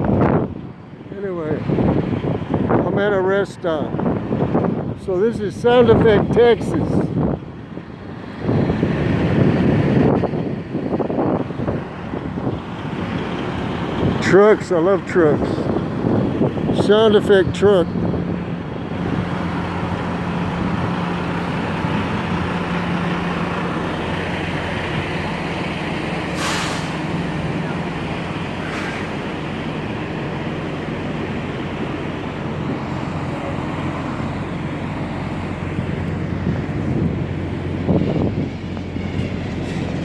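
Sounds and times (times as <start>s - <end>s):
diesel engine idling: 0.0s - 40.0s
air brake hiss: 26.3s - 27.1s, 28.6s - 29.2s.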